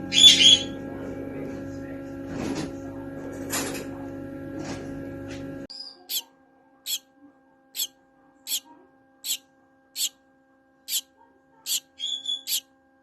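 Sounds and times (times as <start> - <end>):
finch chirping: 11.7 - 12.6.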